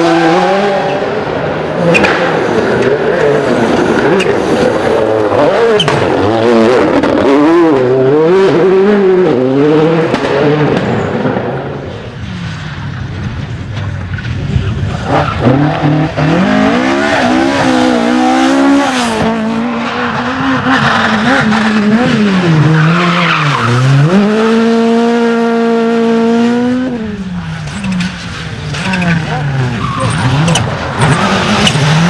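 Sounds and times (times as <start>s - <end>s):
rally car engine revving: 0.0s - 32.0s
tyre squeal: 28.8s - 32.0s.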